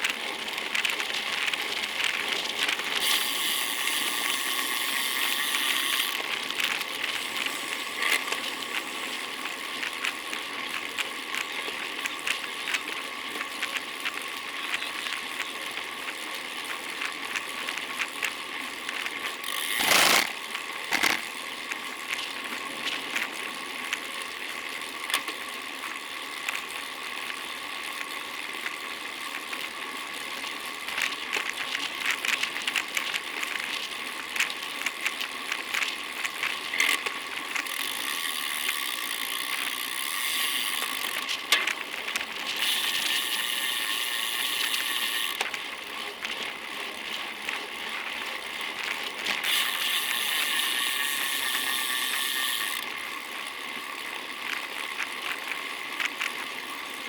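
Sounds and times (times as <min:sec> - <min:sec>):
bicycle freewheel ticking: 0:00.0 - 0:57.0
rattling clicks: 0:19.7 - 0:21.3.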